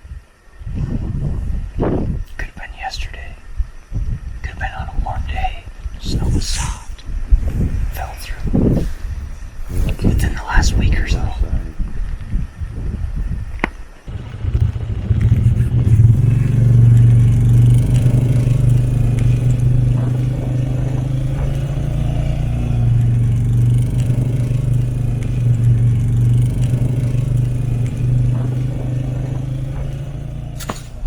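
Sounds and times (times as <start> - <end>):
vehicle engine humming: 14.0 - 31.0.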